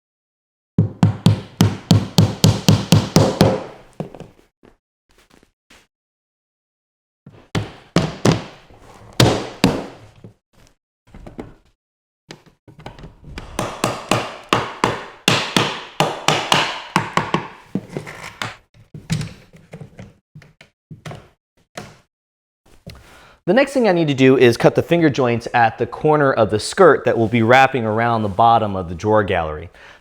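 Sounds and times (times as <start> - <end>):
sharp wooden knocks and taps: 12.8 - 17.6.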